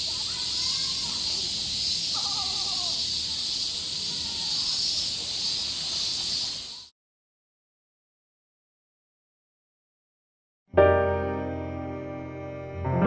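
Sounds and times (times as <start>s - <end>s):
cicadas singing: 0.0s - 6.9s
crow cawing: 2.1s - 3.3s.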